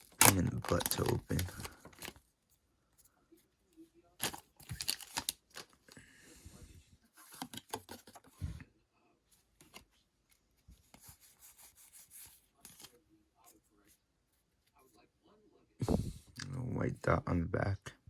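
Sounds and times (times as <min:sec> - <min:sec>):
foil wrapper tearing and crinkling: 0:00.0 - 0:02.1, 0:04.2 - 0:05.8.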